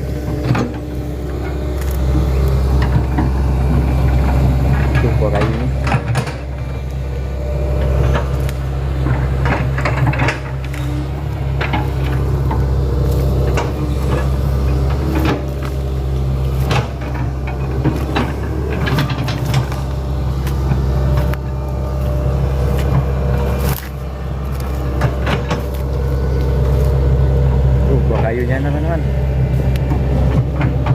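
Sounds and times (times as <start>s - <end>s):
excavator diesel engine running: 0.0s - 30.9s.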